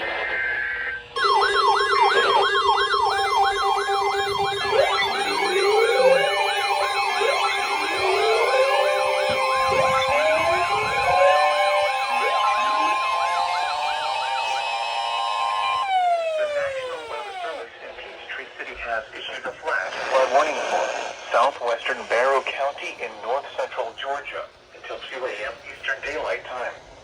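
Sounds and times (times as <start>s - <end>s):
siren rising and falling wails: 0.0s - 17.7s
siren fast yelp: 0.4s - 17.6s.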